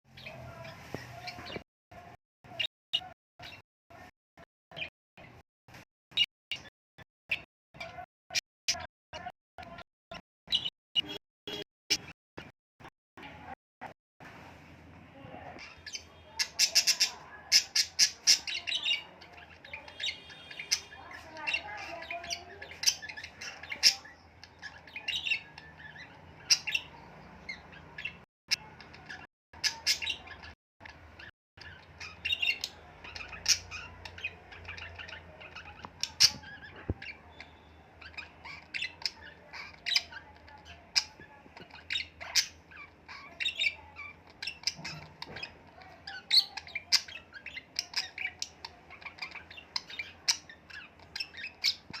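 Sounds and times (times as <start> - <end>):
birds chirping and squawking: 0.1 - 4.1, 4.7 - 6.7, 7.3 - 13.6, 15.4 - 52.0.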